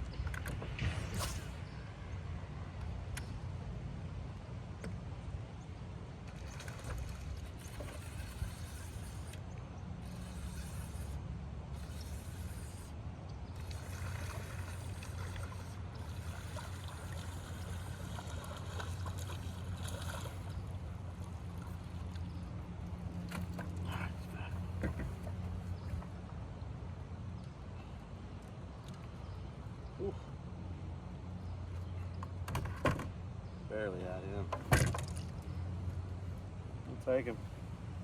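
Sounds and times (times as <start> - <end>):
boat motor humming: 0.0 - 38.0
water splashing at hull: 6.2 - 9.4, 13.5 - 26.0.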